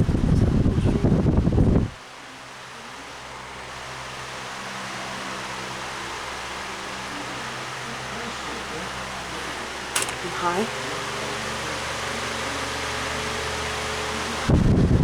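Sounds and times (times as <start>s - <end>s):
wind buffeting on microphone: 0.0s - 2.0s, 14.5s - 15.0s
table fan running: 0.0s - 15.0s.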